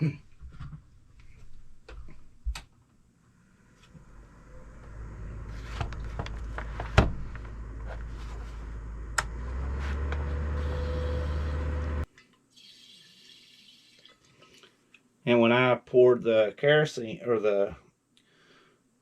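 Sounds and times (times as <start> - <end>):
electric fan running: 3.8 - 12.0.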